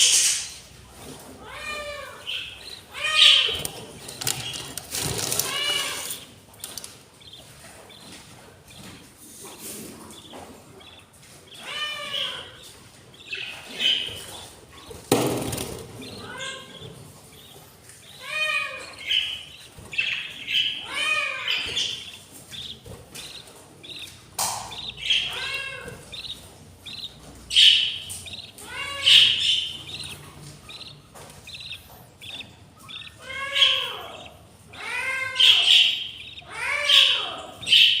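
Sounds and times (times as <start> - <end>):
bird chicks begging calls: 0.0 - 38.0.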